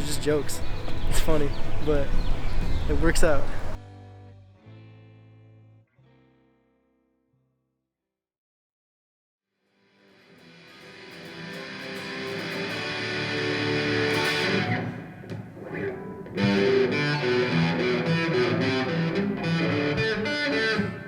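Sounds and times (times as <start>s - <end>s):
electric guitar music: 0.0s - 7.1s, 9.8s - 21.0s.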